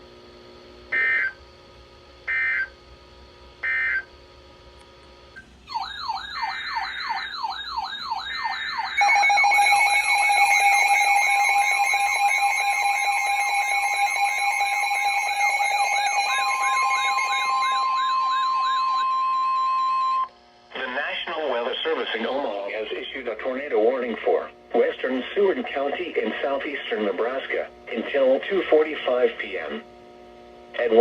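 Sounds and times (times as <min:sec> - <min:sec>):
fast-warbling alarm tones: 0:00.9 - 0:01.4, 0:02.3 - 0:02.7, 0:03.6 - 0:04.1, 0:05.7 - 0:20.3
steady alarm tones: 0:00.9 - 0:01.4, 0:02.2 - 0:02.8, 0:03.6 - 0:04.1, 0:05.4 - 0:20.4.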